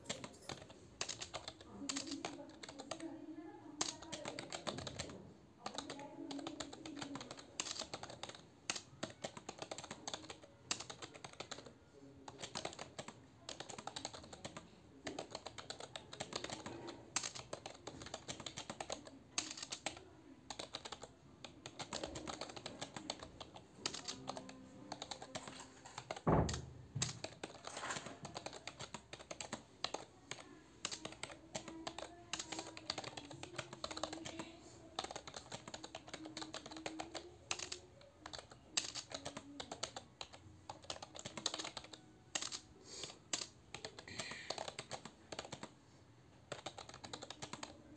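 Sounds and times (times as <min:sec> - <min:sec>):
fast typing on computer keyboard: 0:00.0 - 0:03.1, 0:03.8 - 0:45.8, 0:46.4 - 0:47.9
thump: 0:26.3 - 0:26.7.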